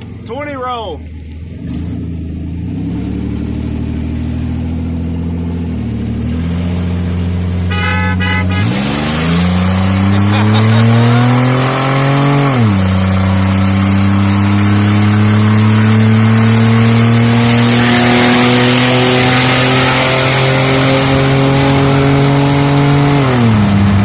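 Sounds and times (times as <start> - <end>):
car engine at full throttle: 0.0 - 24.0.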